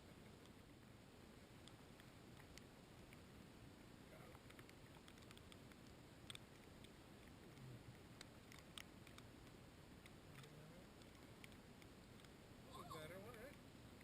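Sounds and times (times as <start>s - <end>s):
faint ticks: 1.5s - 3.4s, 4.2s - 12.4s.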